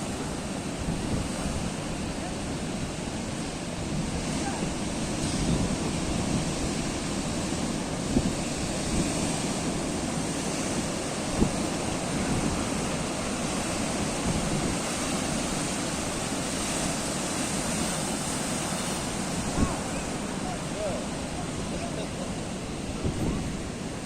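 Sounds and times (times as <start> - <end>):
ocean waves breaking: 0.0 - 24.0
wind noise on microphone: 0.0 - 24.0.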